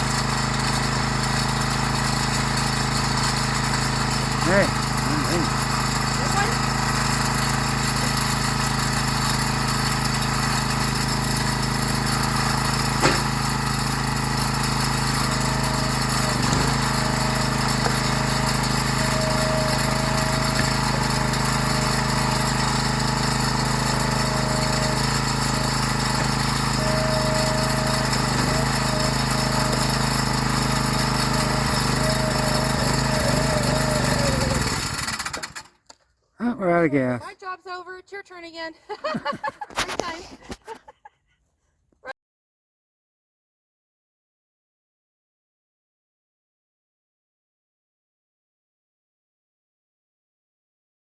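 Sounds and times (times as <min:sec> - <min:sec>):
small engine running: 0:00.0 - 0:35.9.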